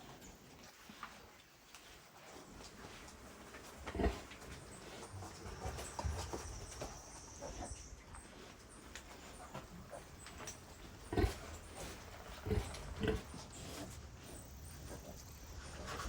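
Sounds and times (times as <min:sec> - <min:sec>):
pigs grunting: 0:03.6 - 0:05.8, 0:10.8 - 0:16.0.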